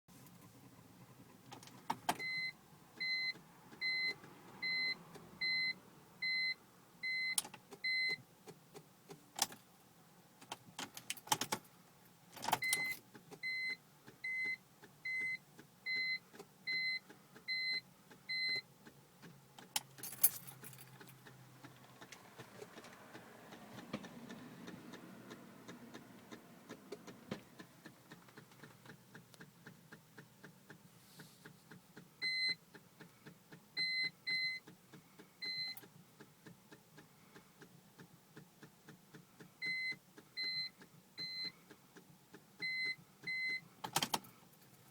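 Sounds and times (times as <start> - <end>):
car warning chime beeping: 2.1 - 8.2, 12.5 - 18.7, 32.0 - 32.8, 33.7 - 34.8, 35.4 - 35.9, 39.6 - 41.6, 42.6 - 44.2
keys jangling: 19.8 - 21.2.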